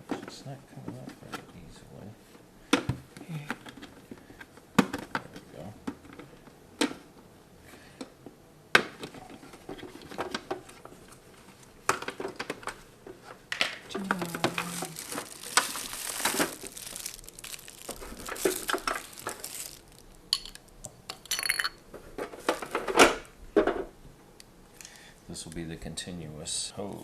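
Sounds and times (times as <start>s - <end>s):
plastic wrapping crinkling: 13.9s - 20.8s, 22.1s - 23.2s.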